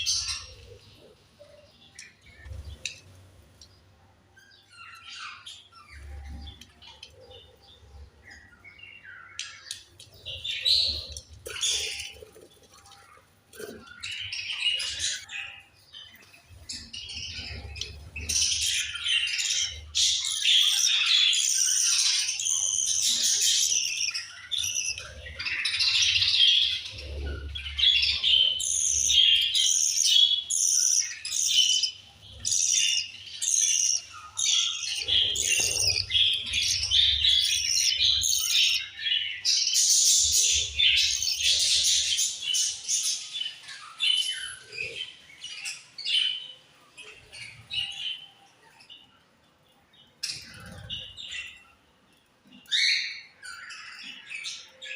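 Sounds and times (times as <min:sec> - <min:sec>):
budgerigars chirping: 0:00.0 - 0:01.2, 0:08.4 - 0:12.2, 0:16.6 - 0:46.5.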